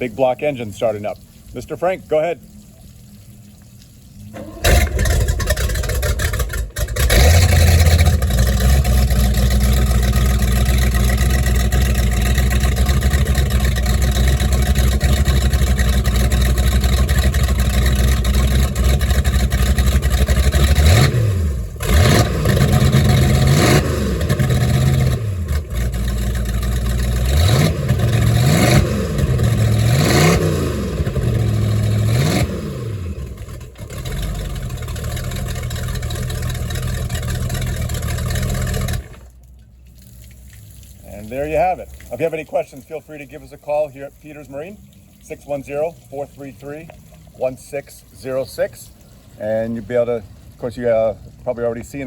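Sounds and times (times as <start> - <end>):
boat engine starting and idling: 0.0 - 52.0
engine revving: 4.4 - 39.3.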